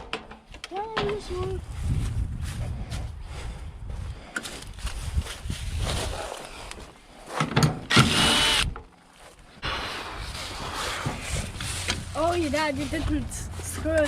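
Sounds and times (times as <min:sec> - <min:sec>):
cordless power tool burst: 0:07.9 - 0:08.8.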